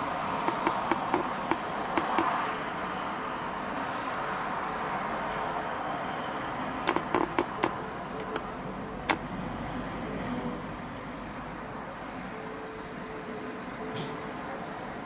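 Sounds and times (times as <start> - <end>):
steady background noise: 0.0 - 15.0
sharp clicks: 0.4 - 2.4, 6.8 - 8.5.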